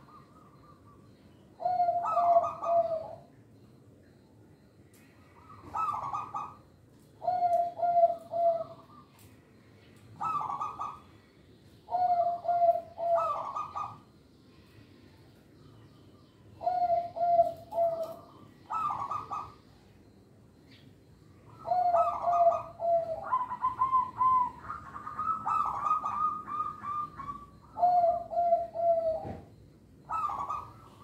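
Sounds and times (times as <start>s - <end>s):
dove cooing: 0.0s - 3.3s, 5.2s - 9.2s, 10.2s - 11.2s, 11.8s - 14.2s, 16.5s - 20.2s, 21.4s - 31.0s.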